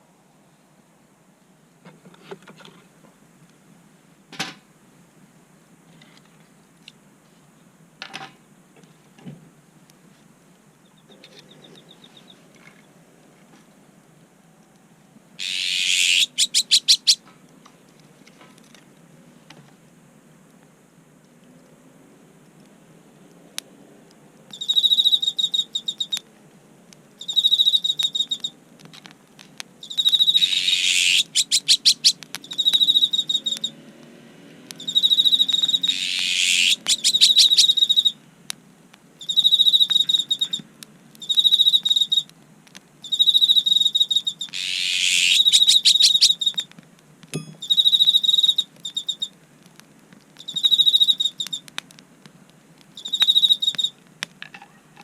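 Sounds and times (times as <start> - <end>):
insect chirping trills: 15.4 - 17.2, 24.5 - 26.2, 27.2 - 28.6, 29.8 - 33.8, 34.8 - 38.2, 39.2 - 42.3, 43.0 - 46.7, 47.4 - 49.4, 50.4 - 51.7, 52.9 - 54.0
wood fire crackling: 26.0 - 30.3, 32.1 - 33.6, 37.7 - 43.2, 46.3 - 47.4, 48.5 - 54.4
low rumble of wood fire: 40.5 - 41.4, 42.2 - 43.1, 48.8 - 50.5, 51.4 - 53.0.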